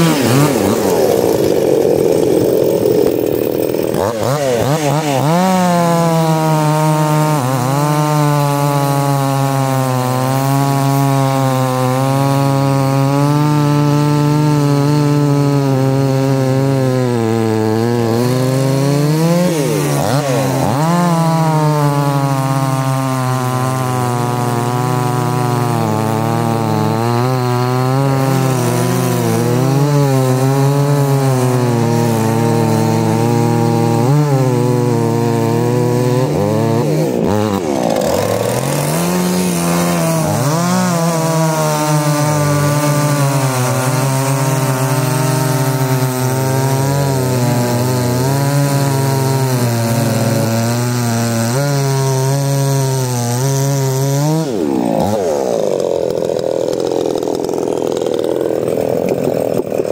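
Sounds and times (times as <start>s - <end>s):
chainsaw cutting wood: 0.0s - 59.9s.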